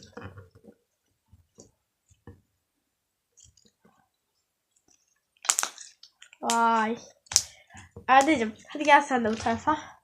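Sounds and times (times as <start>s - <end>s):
slime squishing by hand: 4.8s - 9.8s.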